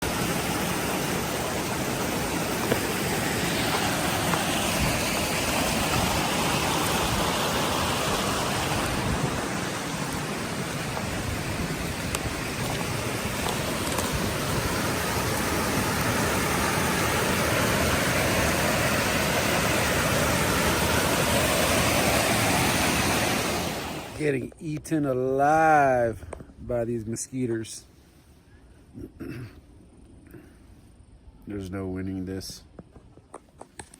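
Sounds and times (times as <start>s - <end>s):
creek water rushing: 0.0s - 24.4s.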